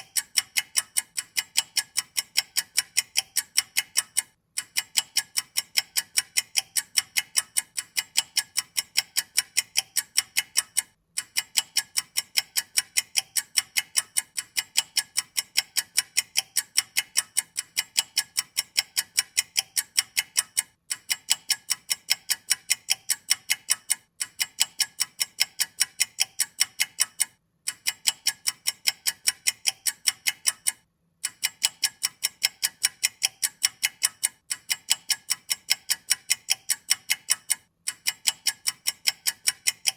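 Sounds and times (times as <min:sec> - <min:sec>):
clock ticking rapidly: 0:00.0 - 0:39.9.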